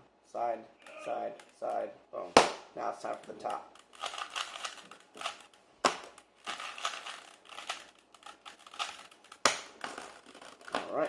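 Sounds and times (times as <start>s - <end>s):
sharp plastic clack: 2.4s - 11.0s
puzzle cube clicking and rattling: 3.0s - 10.9s.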